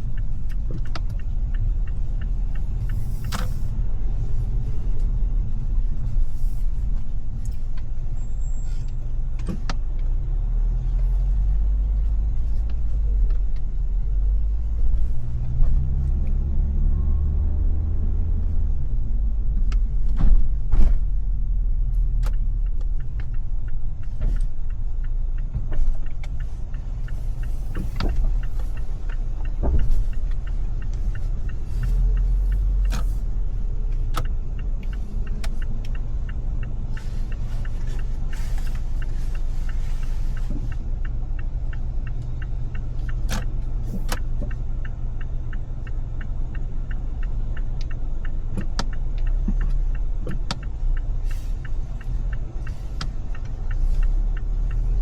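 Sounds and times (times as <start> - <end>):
sharp clicks and knocks: 0.0 - 4.2, 21.9 - 55.0
road and engine rumble: 0.0 - 55.0.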